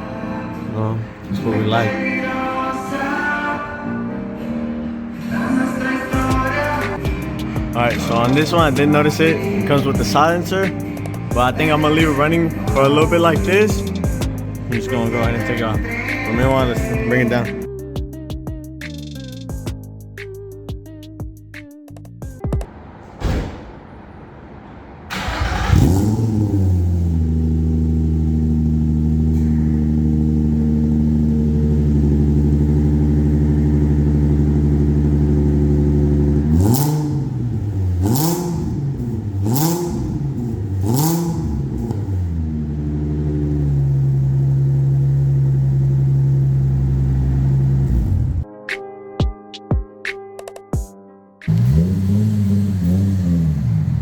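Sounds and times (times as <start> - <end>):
car engine starting and idling: 4.8 - 17.8, 22.6 - 48.4, 51.5 - 54.0
car engine revving: 6.1 - 17.7, 24.0 - 48.4, 51.5 - 54.0.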